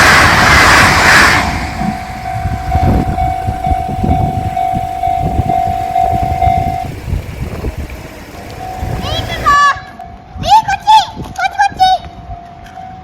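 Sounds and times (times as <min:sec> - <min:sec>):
low train rumble: 0:00.0 - 0:13.0
level-crossing alarm ringing: 0:01.8 - 0:09.5.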